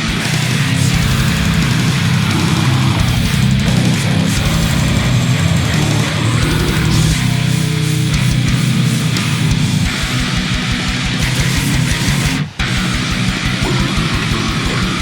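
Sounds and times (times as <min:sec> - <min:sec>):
bass guitar: 0:00.0 - 0:15.0
distorted electric guitar riffing: 0:00.0 - 0:15.0.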